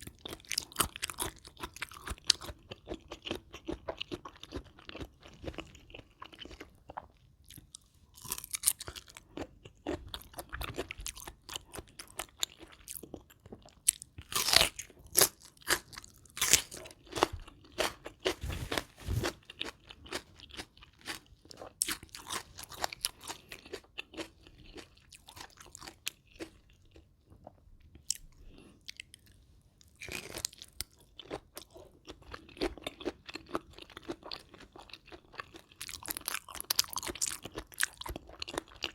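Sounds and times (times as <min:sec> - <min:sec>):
soft chewing: 0:00.0 - 0:38.9
crunching of raw vegetables: 0:00.2 - 0:27.0.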